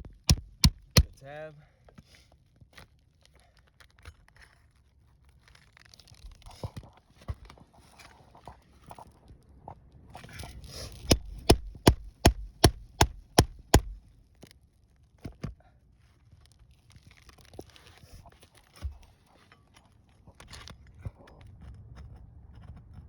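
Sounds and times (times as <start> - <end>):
hammer striking metal tool: 0.3 - 1.2, 11.1 - 14.0.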